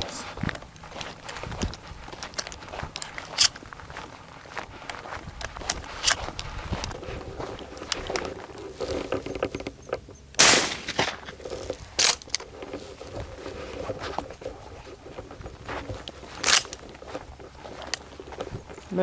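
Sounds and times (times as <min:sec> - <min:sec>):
shotgun shots: 0:10.4 - 0:11.3.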